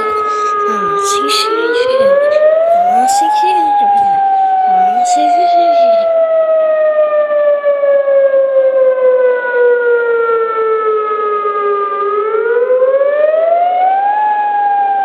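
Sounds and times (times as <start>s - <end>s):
tornado siren wailing: 0.0s - 15.0s.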